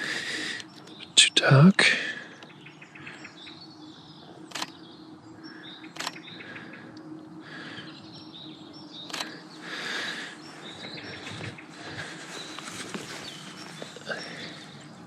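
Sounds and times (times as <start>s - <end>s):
small birds chirping: 0.0s - 15.0s
camera shutter clicks: 4.5s - 4.8s, 5.9s - 6.2s, 9.1s - 9.4s.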